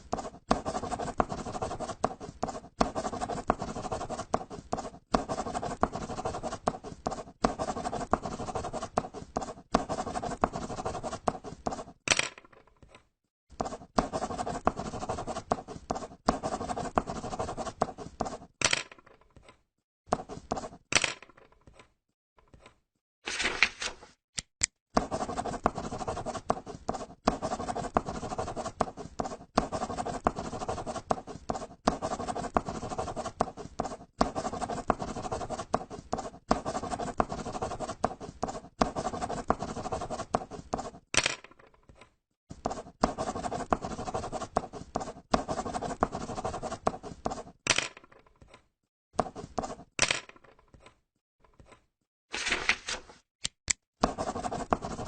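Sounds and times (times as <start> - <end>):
paper crumpling: 52.4 - 53.2.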